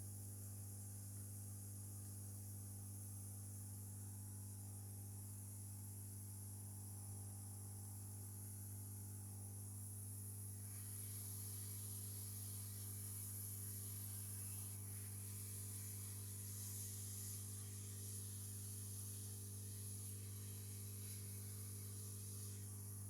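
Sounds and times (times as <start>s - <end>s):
steady low hum: 10.5s - 23.0s
high hiss: 10.6s - 23.0s.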